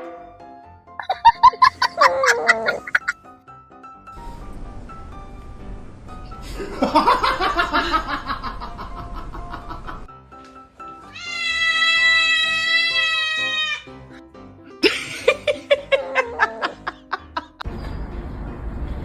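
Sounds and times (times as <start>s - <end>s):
background music: 0.0s - 19.0s
cat yowling and meowing: 1.9s - 3.0s, 11.1s - 14.0s, 15.9s - 16.8s.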